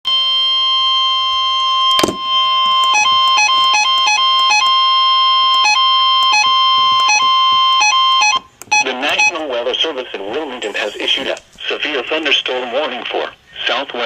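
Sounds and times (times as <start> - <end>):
electronic emergency alert tone: 0.1 - 9.4.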